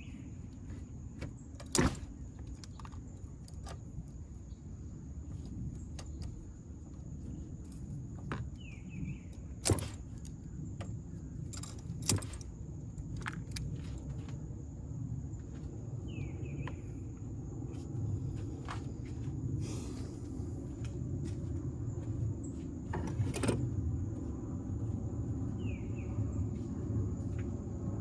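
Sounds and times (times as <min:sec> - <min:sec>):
steady low hum: 0:00.0 - 0:28.0
hand tools clicking on metal: 0:09.6 - 0:10.3, 0:11.4 - 0:13.8.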